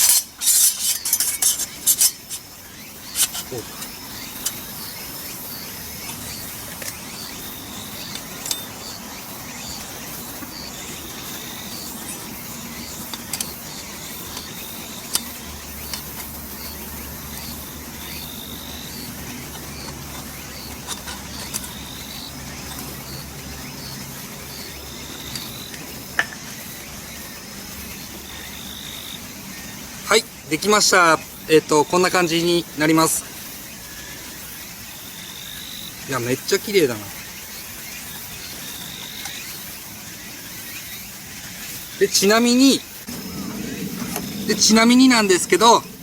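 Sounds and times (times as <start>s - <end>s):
metal parts clicking together: 0.0s - 2.4s
insects chirping: 0.0s - 46.0s.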